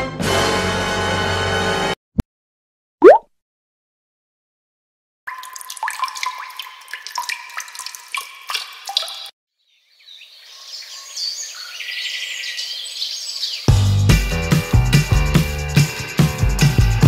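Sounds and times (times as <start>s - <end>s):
water drops dripping: 5.3s - 9.3s
birds chirping: 6.7s - 13.7s.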